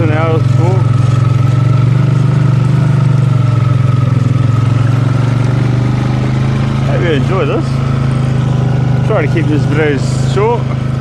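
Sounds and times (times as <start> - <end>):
farm vehicle engine running: 0.0 - 11.0.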